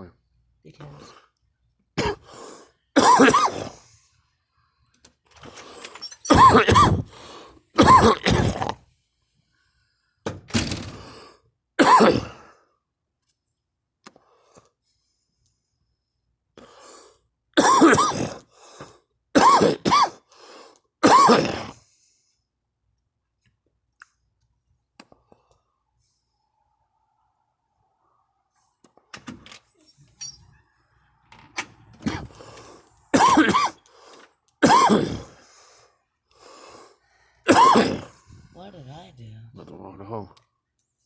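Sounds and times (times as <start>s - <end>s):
woman coughing hard: 2.0s - 2.3s, 3.0s - 3.8s, 6.3s - 7.1s, 7.8s - 8.8s, 11.8s - 12.4s, 17.6s - 18.4s, 19.4s - 20.3s, 21.0s - 21.8s, 32.0s - 32.4s, 33.1s - 33.8s, 34.6s - 35.4s, 37.5s - 38.1s.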